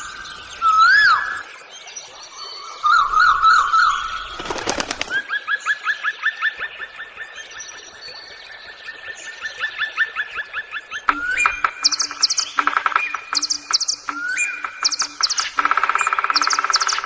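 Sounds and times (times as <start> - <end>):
bird repeated rising notes: 11.1 - 17.0
bird warbling notes: 11.1 - 17.0
bird whistle rising and falling: 11.1 - 17.0.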